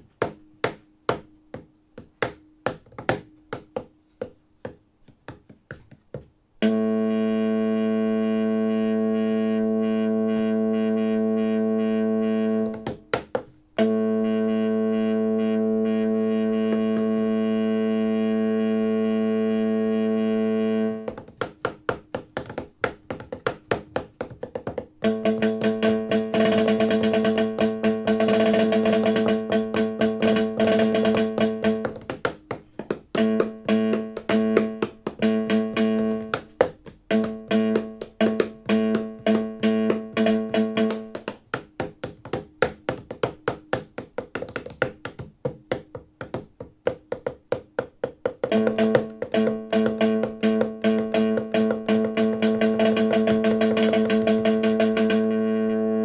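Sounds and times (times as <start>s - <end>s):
held droning electronic note: 6.6s - 12.9s, 13.8s - 21.1s, 25.0s - 32.0s, 37.1s - 41.2s, 48.5s - 56.0s
pitched electronic tone: 6.6s - 13.0s, 13.8s - 21.1s, 25.0s - 32.0s, 33.1s - 36.5s, 37.1s - 41.2s, 48.5s - 56.0s
rapid clicky repeated notes: 6.6s - 56.0s.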